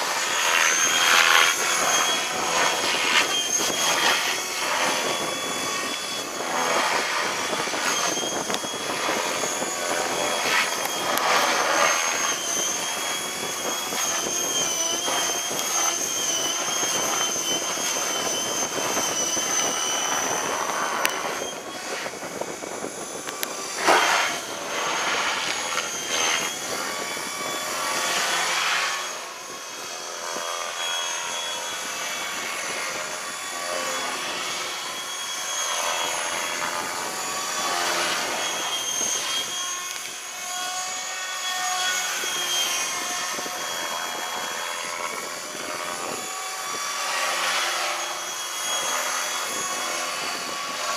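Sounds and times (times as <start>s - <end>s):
model aircraft motor whine: 0.0s - 50.9s
wind buffeting microphone: 1.3s - 28.9s, 42.8s - 46.8s.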